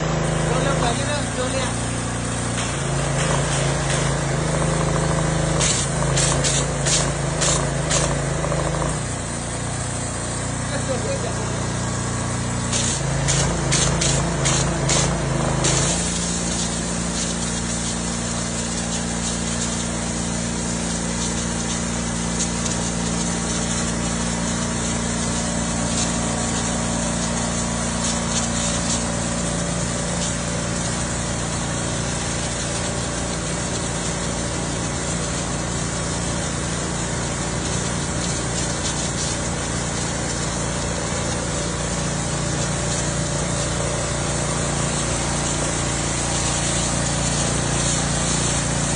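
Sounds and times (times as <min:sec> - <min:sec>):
pressure washer running: 0:00.0 - 0:48.9.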